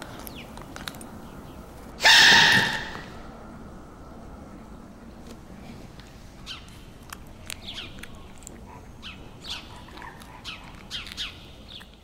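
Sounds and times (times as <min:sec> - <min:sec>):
high animal chirps: 0:02.0 - 0:03.2.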